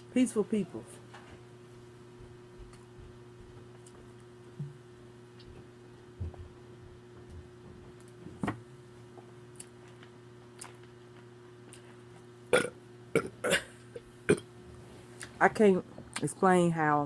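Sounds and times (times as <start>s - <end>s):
faint steady hum: 0.0s - 17.0s
woman burping: 12.5s - 14.5s.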